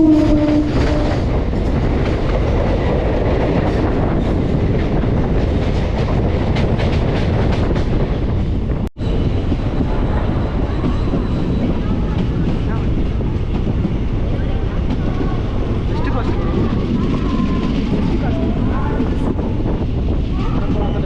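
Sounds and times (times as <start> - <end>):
train horn: 0.0 - 1.3
train wheels rumbling on rails: 0.0 - 21.0.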